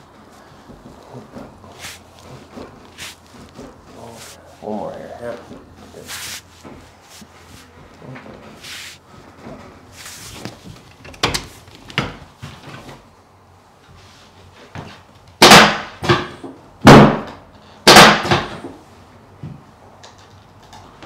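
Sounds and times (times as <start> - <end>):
chiropractic adjustment cracks: 10.4 - 12.3.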